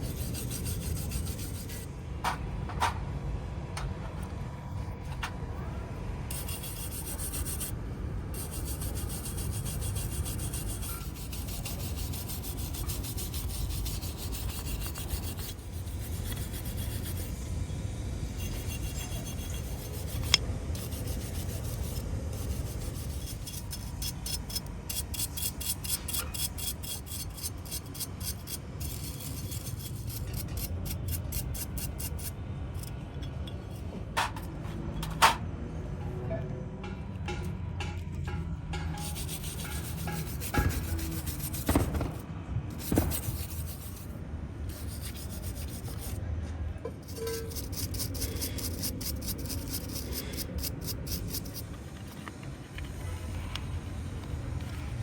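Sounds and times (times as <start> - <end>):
rapid rubbing strokes: 0.0 - 1.9, 6.3 - 7.8, 8.4 - 17.4, 18.3 - 32.9, 39.0 - 44.1, 44.7 - 46.2, 47.0 - 51.7.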